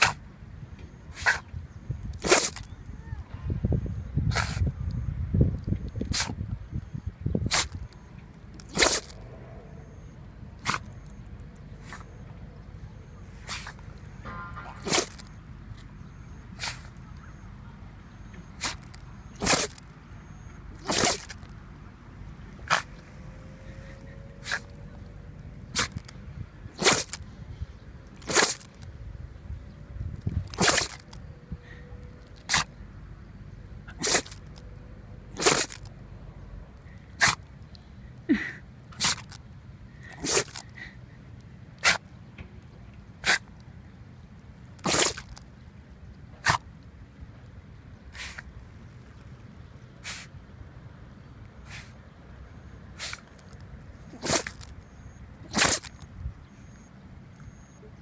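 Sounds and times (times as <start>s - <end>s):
dog sneezing: 1.2s - 1.4s, 2.2s - 2.6s, 4.3s - 4.6s, 7.5s - 7.8s, 8.7s - 9.2s, 10.6s - 10.9s, 13.4s - 13.8s, 14.7s - 15.2s, 16.6s - 16.9s, 18.6s - 19.8s, 20.8s - 21.4s, 22.7s - 22.9s, 24.4s - 24.7s, 25.8s - 26.1s, 26.8s - 27.2s, 28.2s - 28.8s, 30.5s - 31.1s, 32.4s - 32.7s, 33.9s - 34.4s, 35.4s - 35.8s, 37.2s - 37.4s, 38.3s - 39.4s, 40.1s - 40.7s, 41.8s - 42.0s, 43.2s - 43.5s, 44.8s - 45.4s, 46.4s - 46.6s, 48.1s - 48.4s, 50.0s - 50.3s, 51.7s - 52.0s, 53.0s - 53.4s, 54.1s - 54.7s, 55.5s - 56.0s.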